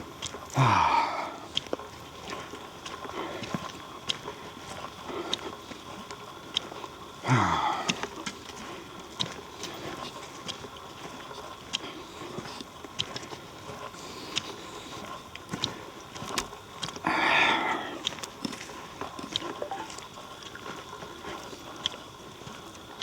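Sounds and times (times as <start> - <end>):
footsteps on dirt trail: 1.5 - 14.4.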